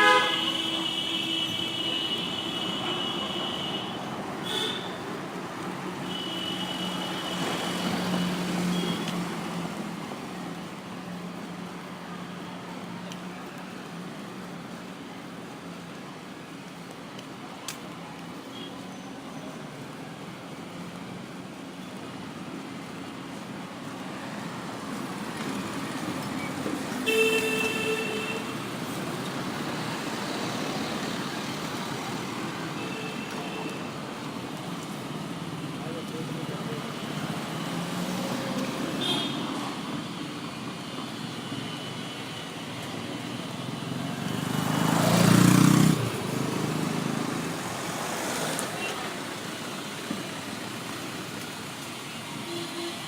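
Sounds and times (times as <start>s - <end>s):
vehicle horn: 0.0s - 5.0s, 27.0s - 28.6s, 39.0s - 39.5s
vehicles passing: 0.0s - 53.0s.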